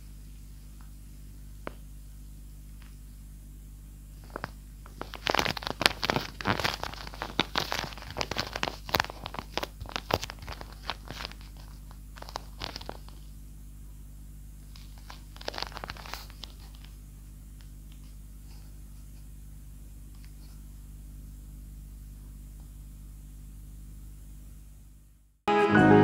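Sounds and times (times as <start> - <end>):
faint steady hum: 0.0 - 26.0
paper crinkling: 4.2 - 13.3, 14.7 - 17.0.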